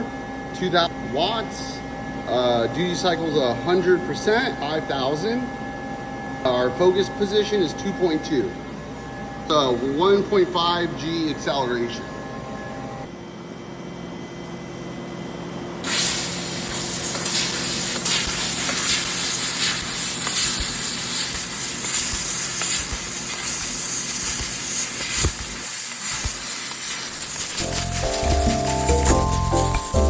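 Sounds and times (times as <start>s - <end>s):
compressed air hissing: 15.8s - 30.0s
crackles: 15.8s - 30.0s
low machine hum: 27.6s - 30.0s.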